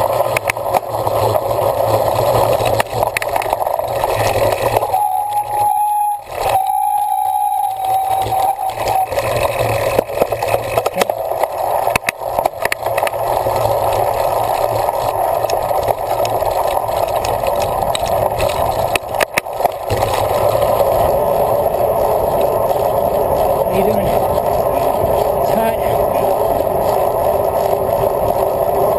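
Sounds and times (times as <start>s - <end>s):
bike rattles and knocks: 0.0s - 5.0s, 6.3s - 28.9s
wind and riding noise: 0.0s - 28.9s
steady high tone: 4.9s - 9.3s.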